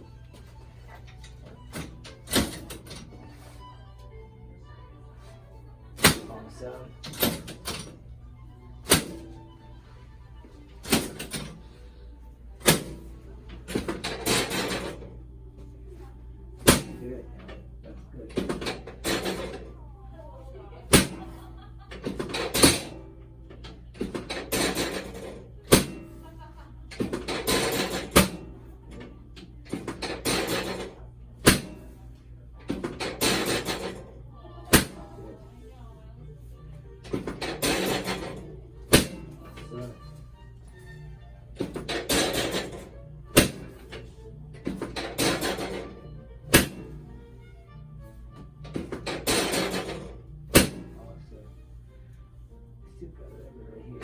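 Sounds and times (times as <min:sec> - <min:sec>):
joints cracking: 0:21.9 - 0:22.9, 0:37.0 - 0:40.2, 0:41.5 - 0:47.2.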